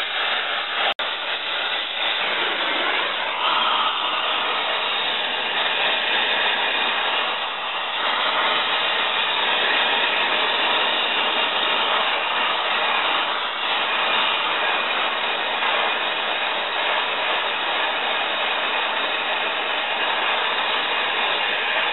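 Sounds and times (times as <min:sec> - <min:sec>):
torch flame hissing: 0:00.0 - 0:21.9.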